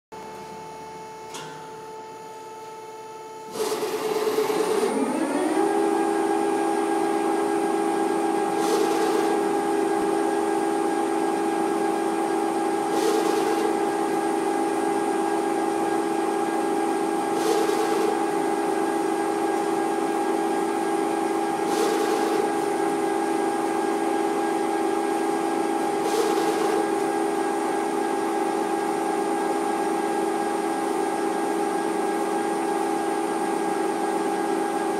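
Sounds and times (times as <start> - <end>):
machine spindle whine: 0.2 - 34.9
brief noisy machine surge: 12.8 - 14.1.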